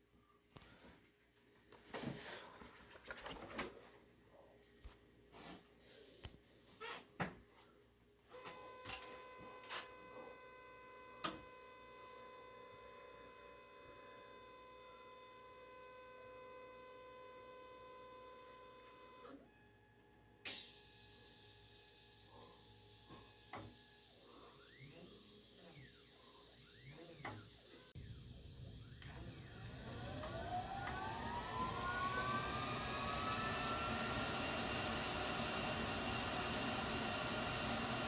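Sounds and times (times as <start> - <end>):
welder buzzing with high whine: 20.5 - 38.0.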